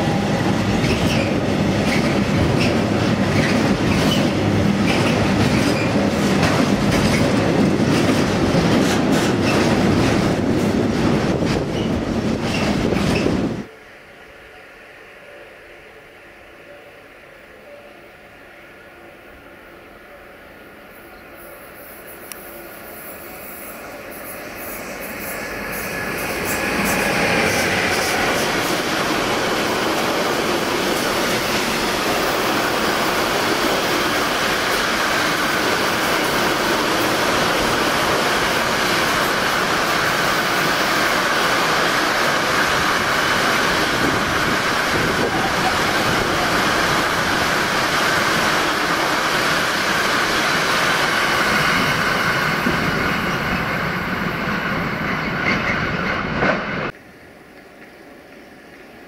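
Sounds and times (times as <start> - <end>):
freight train wagons rolling: 0.0 - 13.5.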